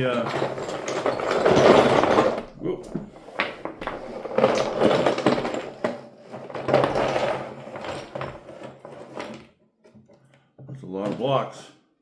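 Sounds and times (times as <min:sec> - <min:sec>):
toy blocks clattering: 0:00.0 - 0:09.4.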